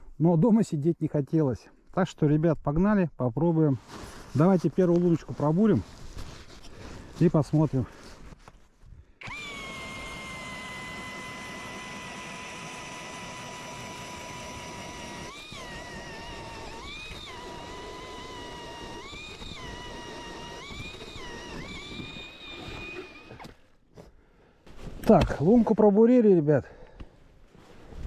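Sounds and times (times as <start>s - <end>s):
cordless drill motor whine: 9.2s - 23.6s.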